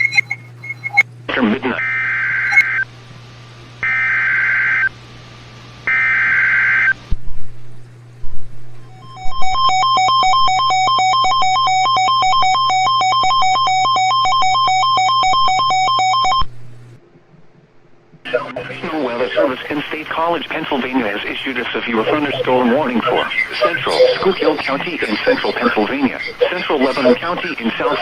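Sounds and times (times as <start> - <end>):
warbling digital data tones: 0.0 - 1.0, 1.8 - 2.9, 8.9 - 16.4, 19.2 - 28.0
steady low hum: 0.0 - 28.0
two-tone attention signal: 8.9 - 16.4.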